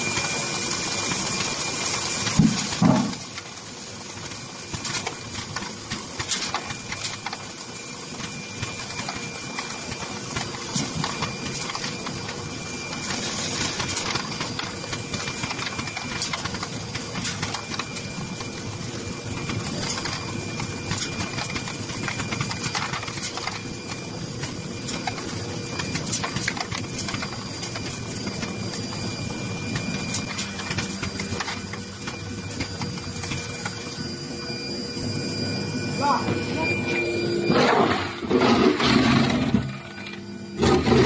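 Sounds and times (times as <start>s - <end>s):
sorting machine humming: 0.0s - 41.0s
small irregular clicks: 4.8s - 7.4s.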